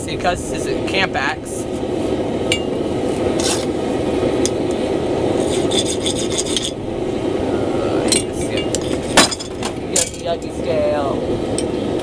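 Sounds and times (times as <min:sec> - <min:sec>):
forge burner rushing: 0:00.0 - 0:12.0
scraping strokes: 0:05.4 - 0:06.8, 0:08.7 - 0:09.2.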